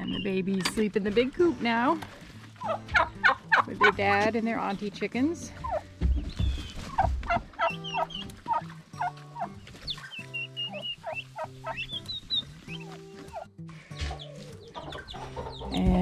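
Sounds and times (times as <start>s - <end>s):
young turkeys chirping peeps: 0.0s - 0.7s, 2.0s - 4.0s, 5.6s - 16.0s
soft background music: 0.0s - 16.0s.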